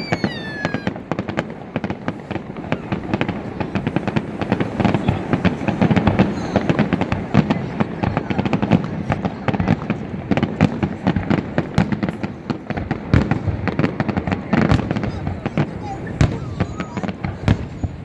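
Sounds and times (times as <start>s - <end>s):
falling whistling tone: 0.0s - 1.0s
fireworks bangs and pops: 0.0s - 18.0s.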